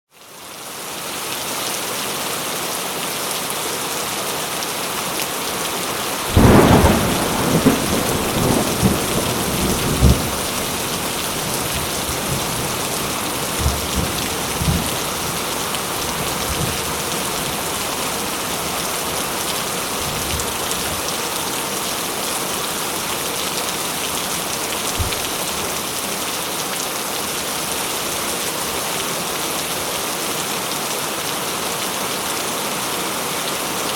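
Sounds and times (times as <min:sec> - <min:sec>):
heavy rain hissing: 0:00.6 - 0:33.9
thunder rumbling: 0:06.3 - 0:19.1.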